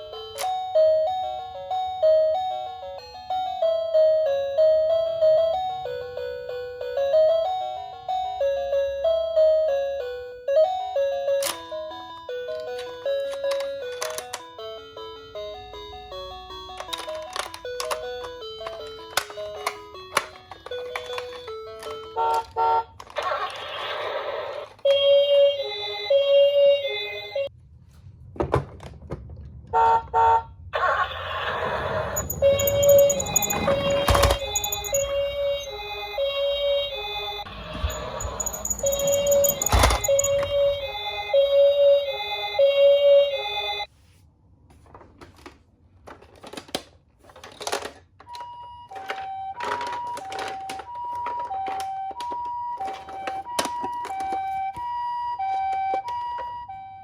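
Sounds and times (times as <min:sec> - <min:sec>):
toy electronic two-tone siren: 0:00.0 - 0:27.5, 0:30.8 - 0:43.9, 0:48.3 - 0:57.0
short beeps: 0:32.2 - 0:35.6, 0:37.8 - 0:41.6.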